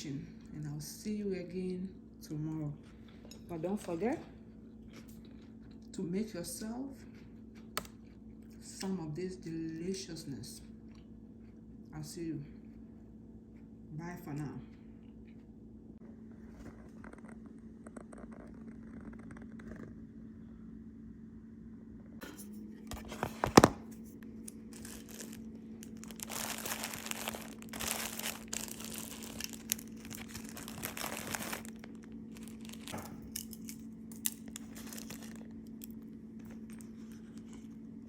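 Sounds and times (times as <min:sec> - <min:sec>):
steady low hum: 0:00.0 - 0:38.0
packaging crinkling and rustling: 0:22.9 - 0:37.4.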